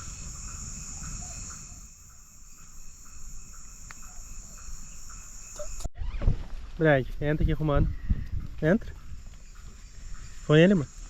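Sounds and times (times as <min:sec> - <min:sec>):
crickets trilling: 0:00.0 - 0:06.2, 0:07.4 - 0:11.0.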